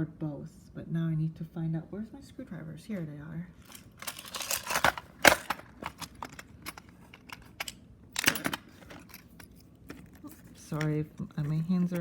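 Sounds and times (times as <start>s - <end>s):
small tools clicking and clattering: 3.6s - 12.0s.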